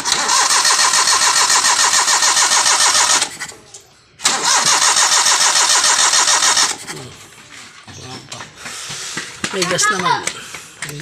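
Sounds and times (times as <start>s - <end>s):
car engine cranking: 0.0s - 3.6s, 4.2s - 7.0s.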